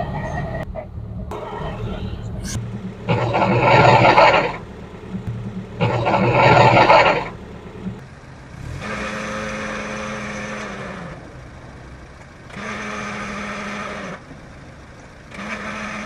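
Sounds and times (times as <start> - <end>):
rough bearing whine: 0.0 - 11.8
car engine idling: 0.0 - 16.0.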